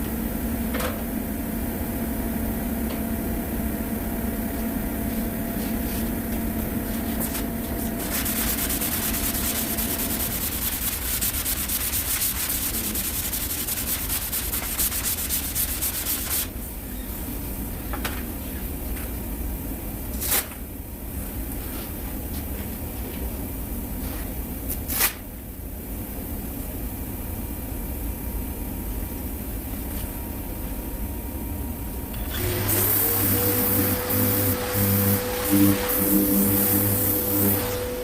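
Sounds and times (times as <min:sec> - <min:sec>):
low steady hum: 0:00.0 - 0:24.7, 0:25.4 - 0:38.0
hand sanding back and forth: 0:08.0 - 0:16.5, 0:32.4 - 0:38.0.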